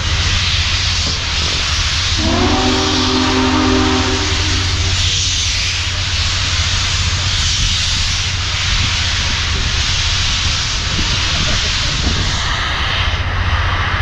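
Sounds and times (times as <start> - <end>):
low rumble: 0.0 - 9.9
loud hiss of steam: 0.0 - 14.0
steam whistle: 2.1 - 5.4.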